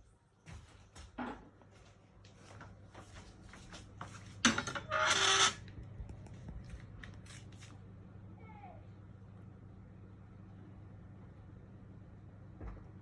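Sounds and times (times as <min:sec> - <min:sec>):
steady low hum: 0:05.5 - 0:13.0.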